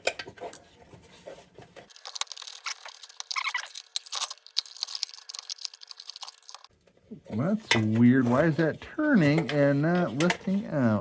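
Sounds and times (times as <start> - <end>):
metallic clicks and scraping: 1.9 - 6.7.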